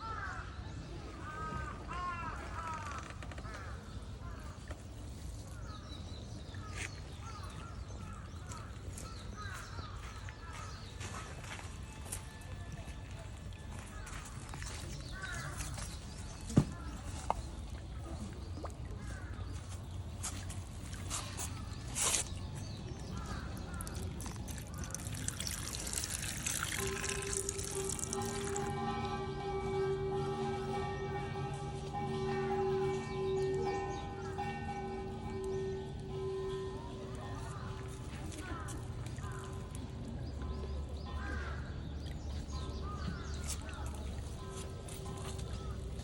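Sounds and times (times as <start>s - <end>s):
water drops ringing plinks: 22.8s - 41.4s.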